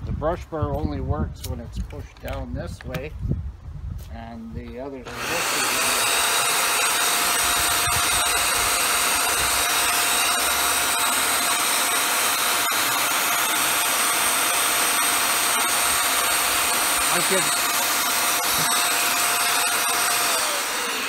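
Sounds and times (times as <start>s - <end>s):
vacuum cleaner running: 5.1s - 21.0s.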